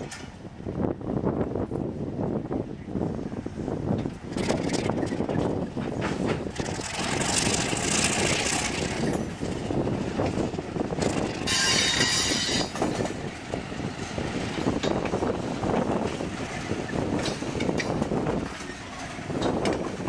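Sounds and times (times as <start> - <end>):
train wheels clattering: 4.0 - 20.0
high-pitched wheel noise: 6.3 - 20.0.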